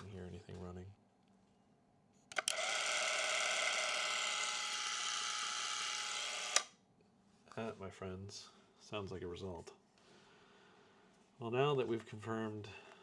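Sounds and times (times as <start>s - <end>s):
camera trigger click: 2.3s - 6.7s
film camera motor whirring: 2.3s - 6.7s.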